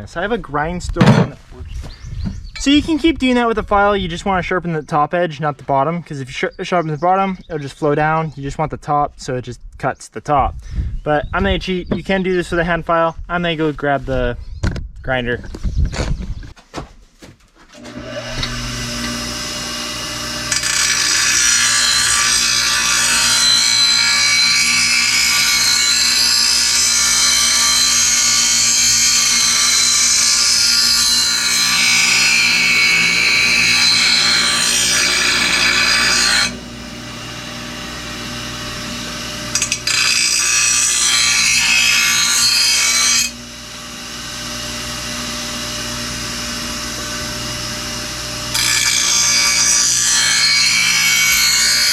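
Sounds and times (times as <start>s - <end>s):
blade grinding on wheel: 17.8s - 36.6s
electric grinder motor running: 17.8s - 51.9s.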